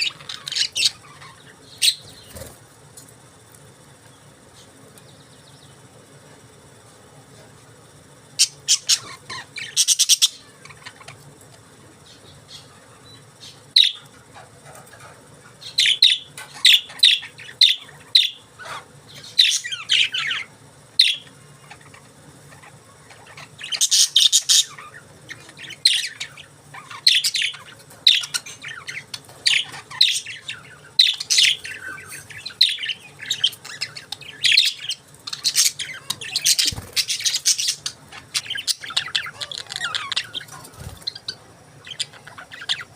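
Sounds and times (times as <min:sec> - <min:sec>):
budgerigars chirping: 0:00.0 - 0:02.5, 0:08.4 - 0:11.2, 0:13.4 - 0:14.1, 0:15.7 - 0:42.9.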